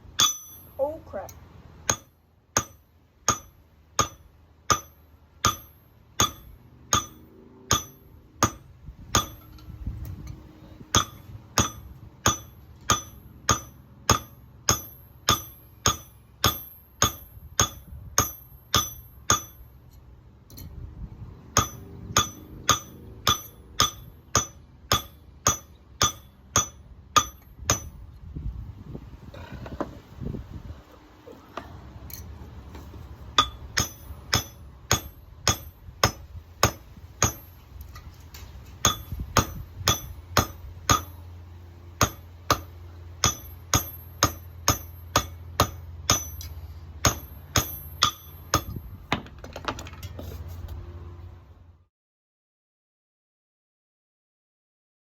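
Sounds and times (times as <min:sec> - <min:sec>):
hammer striking steel on anvil: 0:00.2 - 0:09.7, 0:10.8 - 0:20.7, 0:21.5 - 0:28.0, 0:33.3 - 0:37.7, 0:38.8 - 0:41.3, 0:42.0 - 0:49.0.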